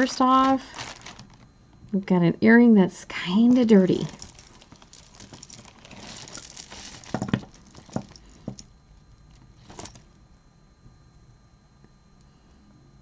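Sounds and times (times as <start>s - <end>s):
packaging rustling: 0.0s - 1.5s, 3.4s - 8.7s, 9.3s - 10.2s.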